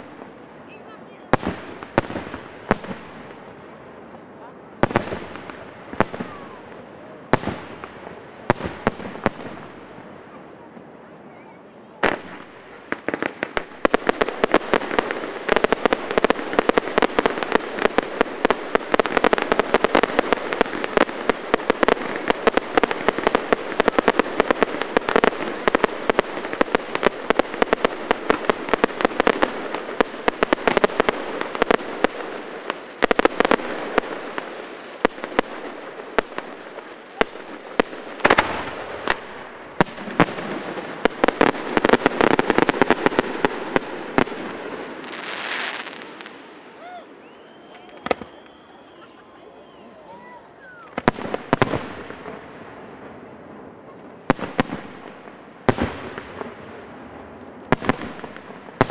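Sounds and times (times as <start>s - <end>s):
fireworks banging and crackling: 0.0s - 58.9s.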